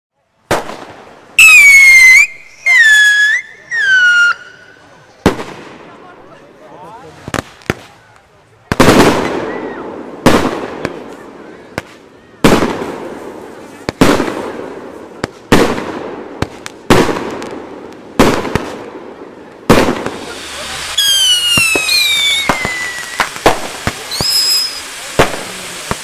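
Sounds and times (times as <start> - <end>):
sharp firework cracks: 0.4 - 4.6, 5.2 - 6.0, 7.2 - 26.0
fireworks bangs: 0.4 - 26.0
whistling firework: 0.5 - 5.5, 8.7 - 14.7, 18.2 - 26.0.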